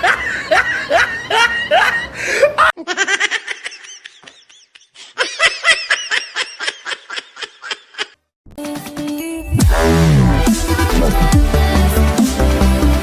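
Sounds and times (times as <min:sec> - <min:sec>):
person laughing: 0:00.0 - 0:08.2
thin laugh: 0:00.0 - 0:08.2.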